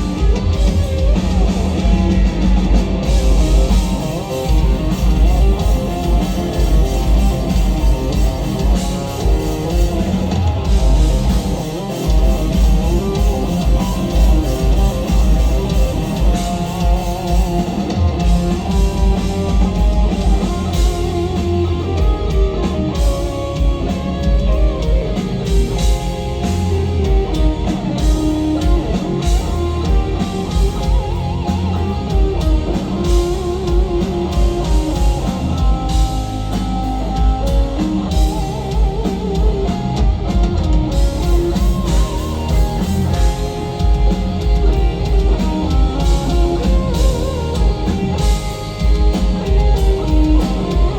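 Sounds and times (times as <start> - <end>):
drum kit: 0.0 - 50.9
lead electric guitar: 0.0 - 50.9
live metal band: 0.0 - 50.9.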